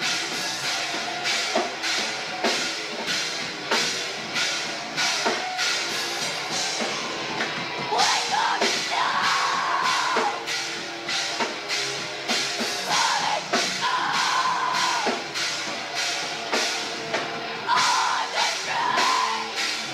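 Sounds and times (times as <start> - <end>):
drum kit cymbal hits: 0.0 - 19.9
loud live rock band: 0.0 - 19.9.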